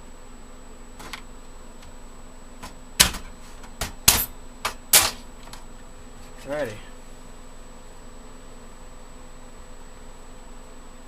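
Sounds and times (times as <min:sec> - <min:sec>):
screwdriver knocking sheet metal: 0:02.6 - 0:05.2.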